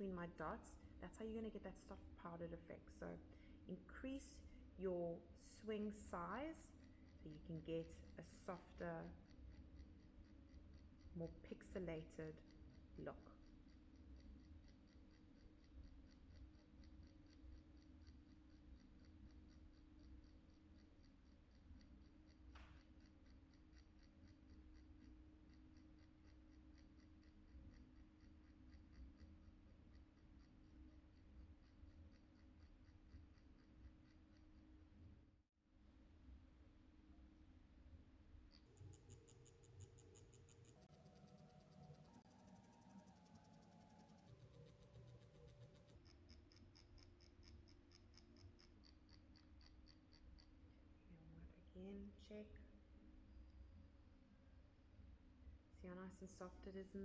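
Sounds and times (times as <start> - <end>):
machine low hum: 0.0 - 35.4, 36.1 - 57.0
light regular ticking: 5.4 - 34.8, 38.5 - 50.8.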